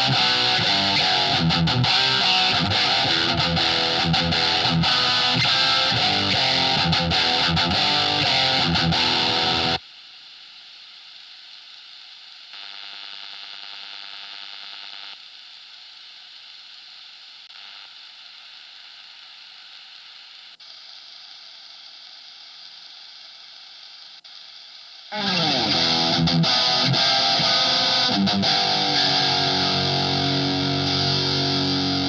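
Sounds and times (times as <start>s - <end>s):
distorted electric guitar: 0.0s - 9.8s, 25.1s - 32.0s
amplifier hiss: 0.0s - 32.0s
buzzing hum: 25.1s - 32.0s.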